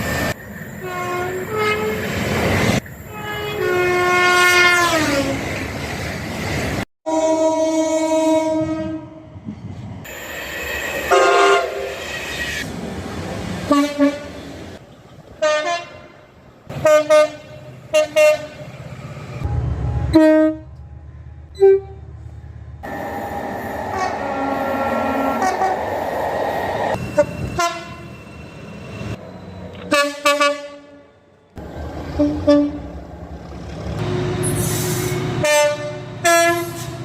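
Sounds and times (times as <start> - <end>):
train running noise: 0.0 - 6.8, 8.4 - 37.0
train horn blasts: 0.8 - 2.0, 3.1 - 5.4, 7.1 - 9.2, 11.1 - 11.8, 13.7 - 14.3, 15.4 - 18.6, 20.0 - 20.7, 23.9 - 25.8, 27.2 - 28.1, 29.9 - 31.1, 32.2 - 32.9, 35.4 - 37.0.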